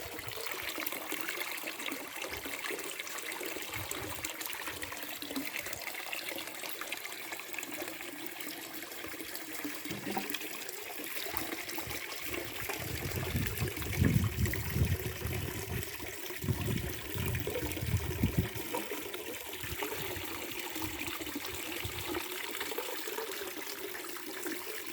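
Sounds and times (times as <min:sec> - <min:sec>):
water trickling and splashing: 0:00.0 - 0:24.9.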